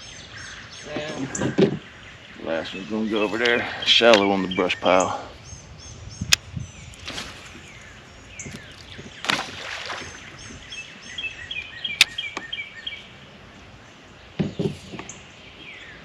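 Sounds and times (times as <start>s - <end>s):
birds chirping and whistling: 0.0s - 16.0s
dull knocks: 14.4s - 15.1s.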